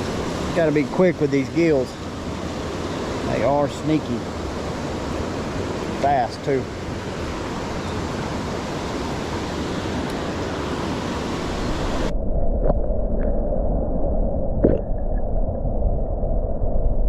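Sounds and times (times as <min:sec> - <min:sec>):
creek water running: 0:00.0 - 0:12.1.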